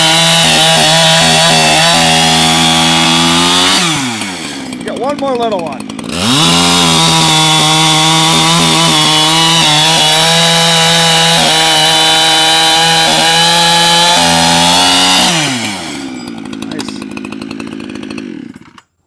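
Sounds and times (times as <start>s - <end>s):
chainsaw cutting log: 0.0s - 19.0s.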